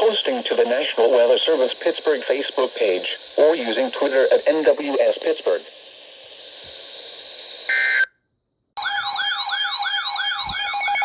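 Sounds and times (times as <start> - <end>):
receiver hiss: 0.0 - 8.1
electronic siren alert tone wailing: 8.8 - 11.0.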